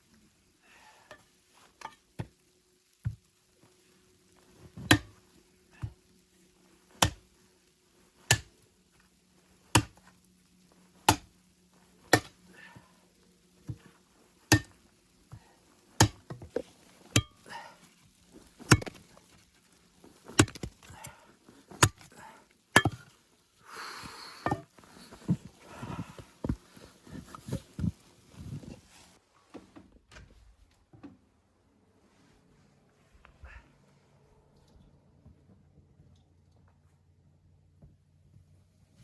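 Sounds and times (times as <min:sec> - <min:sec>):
sharp chopping blows on wood: 0:08.3 - 0:08.5, 0:09.8 - 0:10.0, 0:11.1 - 0:11.3, 0:14.5 - 0:14.7, 0:16.0 - 0:16.3.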